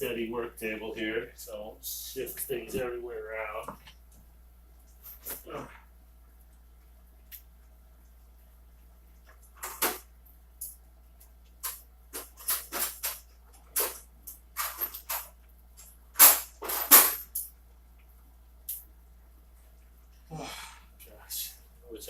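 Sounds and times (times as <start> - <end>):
tools rustling and clattering: 11.6 - 17.5.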